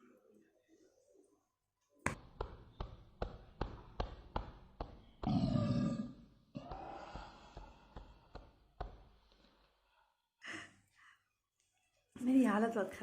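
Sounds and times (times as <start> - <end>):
woman burping: 5.2 - 6.3
breathy vocal sound: 5.2 - 8.5.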